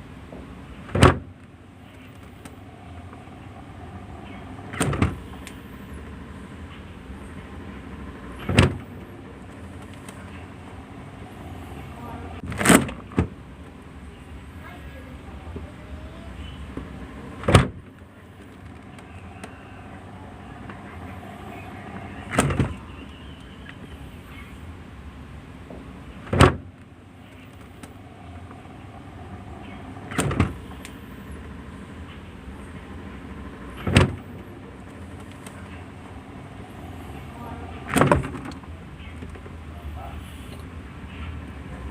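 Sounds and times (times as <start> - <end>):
low background hum: 0.0 - 41.9.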